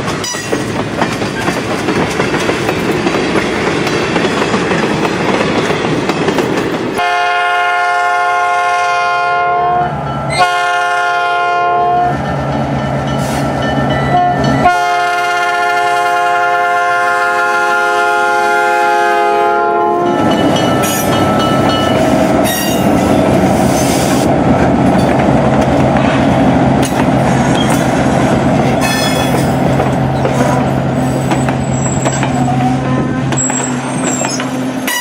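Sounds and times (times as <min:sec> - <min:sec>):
train wheels clattering over rails: 0:00.0 - 0:07.0, 0:20.1 - 0:35.0
locomotive air horn blasts: 0:07.0 - 0:12.2, 0:14.1 - 0:20.2.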